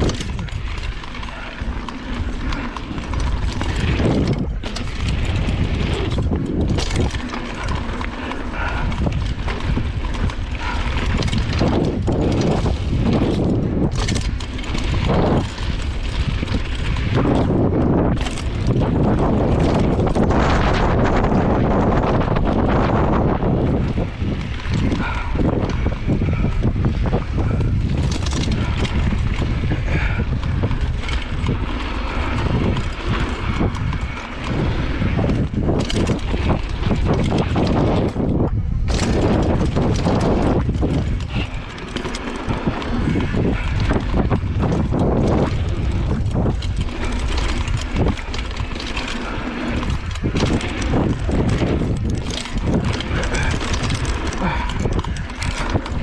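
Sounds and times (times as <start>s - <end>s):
bike knocking on bumps: 0.0s - 56.0s
bike rattling: 0.0s - 56.0s
tyres rolling on dirt: 0.0s - 56.0s
wind rushing over microphone: 0.0s - 56.0s.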